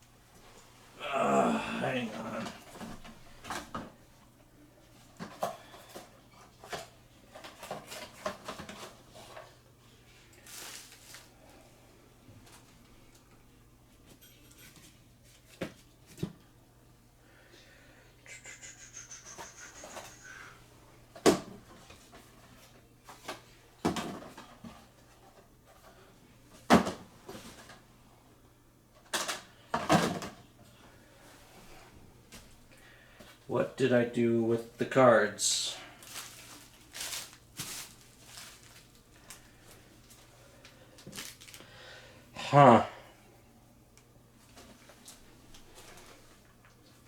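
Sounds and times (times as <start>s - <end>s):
packaging rustling: 10.4s - 11.3s, 35.9s - 40.3s, 41.0s - 41.7s.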